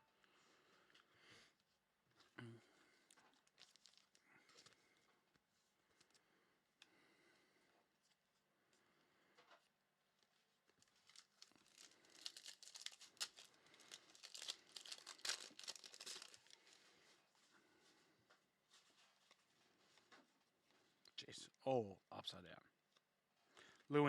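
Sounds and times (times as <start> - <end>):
wrapper crinkling and tearing: 3.1 - 4.8, 10.7 - 16.9.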